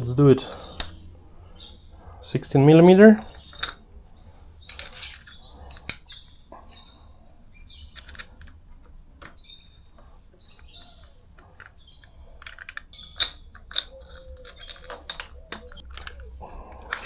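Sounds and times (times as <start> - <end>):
metal tool clicks and clinks: 0.5 - 1.1, 3.2 - 3.8, 11.4 - 16.3.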